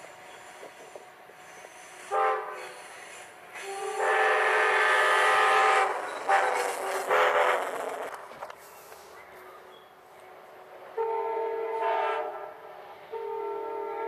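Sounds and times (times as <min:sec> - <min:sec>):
locomotive air horn blasts: 0:02.1 - 0:02.7, 0:03.6 - 0:07.7, 0:11.0 - 0:14.0.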